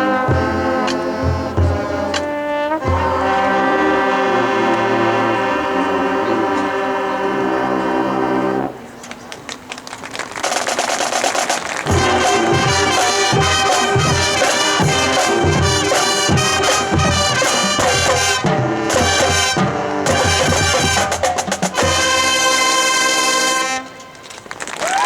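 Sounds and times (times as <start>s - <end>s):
marching band brass: 0.0s - 8.9s, 10.4s - 25.0s
drum hits: 10.7s - 22.8s.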